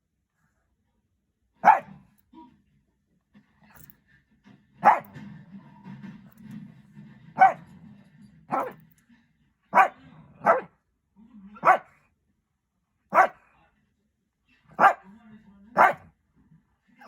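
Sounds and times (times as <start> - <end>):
dog barking: 1.6 - 2.0, 4.8 - 5.2, 7.4 - 7.6, 8.5 - 8.8, 9.7 - 10.7, 11.6 - 12.0, 13.1 - 13.5, 14.8 - 15.1, 15.8 - 16.1.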